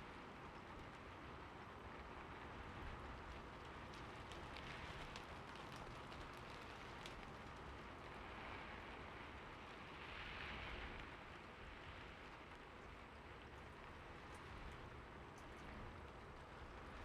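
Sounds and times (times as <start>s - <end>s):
raindrop ticks: 0.0s - 8.4s, 12.0s - 17.0s
steady rain hiss: 0.0s - 17.0s.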